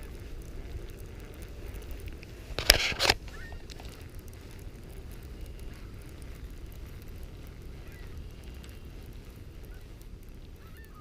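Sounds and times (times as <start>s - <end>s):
low wind rumble: 0.0s - 11.0s
faint bird calls: 3.3s - 4.1s, 5.6s - 11.0s.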